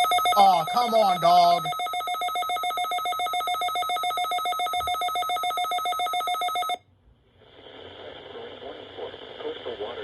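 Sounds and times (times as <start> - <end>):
alarm rapid pulsing trill: 0.0 - 6.8
faint radio hiss: 7.3 - 10.0.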